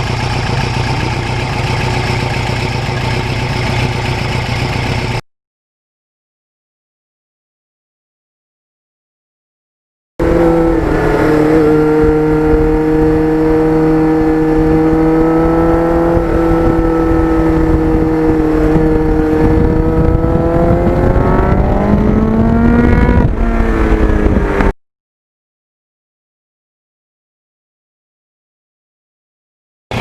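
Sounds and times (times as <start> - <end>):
motorcycle engine cruising: 0.0 - 5.2, 10.2 - 24.8
wind rush: 10.2 - 24.7.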